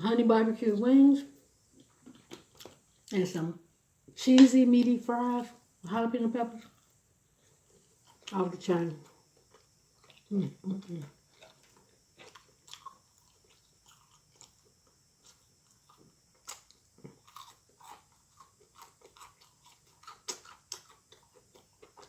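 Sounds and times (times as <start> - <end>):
person chewing food: 1.7 - 3.1, 6.6 - 8.4, 9.0 - 22.0.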